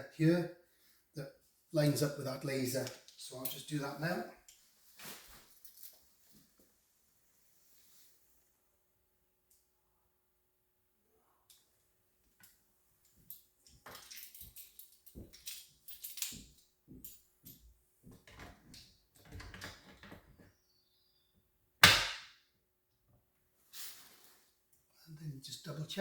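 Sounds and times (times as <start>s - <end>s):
sharp loud knock: 21.8s - 22.3s.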